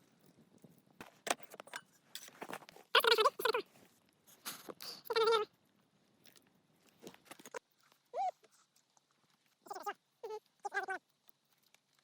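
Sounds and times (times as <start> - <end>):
animal high calls: 9.7 - 11.0.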